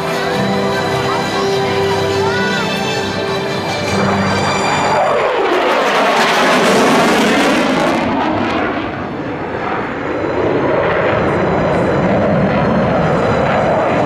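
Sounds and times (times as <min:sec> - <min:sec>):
military aircraft flyby: 0:00.0 - 0:14.0.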